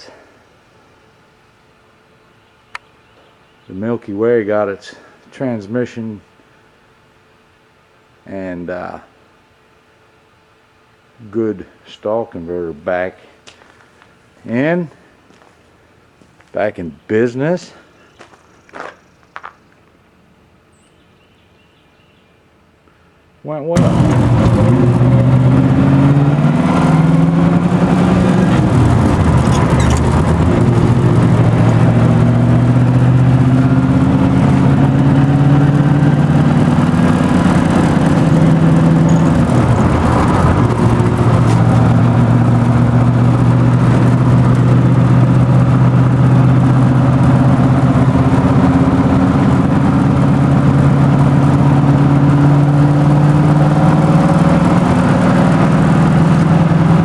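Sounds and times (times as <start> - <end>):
car engine running: 23.8 - 57.0.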